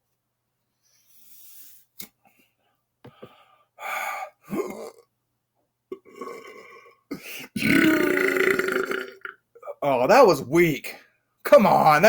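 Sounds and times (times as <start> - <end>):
man gasping and gulping air: 3.1 - 5.0, 5.9 - 9.7
man belching: 4.5 - 5.1, 5.9 - 9.9.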